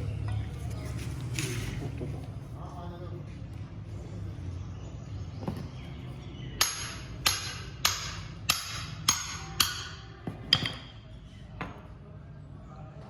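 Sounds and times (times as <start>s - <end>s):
hammer striking metal: 6.6s - 11.0s.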